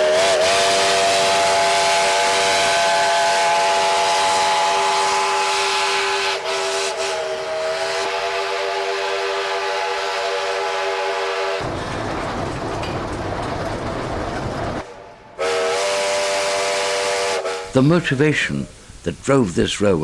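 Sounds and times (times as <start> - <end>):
steam locomotive whistle: 0.0 - 11.6, 15.4 - 18.0
rush of escaping steam: 0.0 - 11.8, 14.0 - 20.0.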